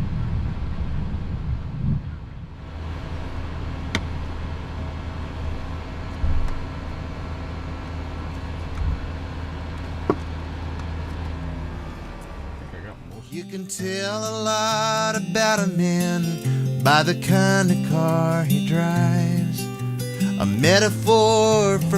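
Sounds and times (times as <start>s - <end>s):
jet engines humming and whining: 0.0s - 13.3s.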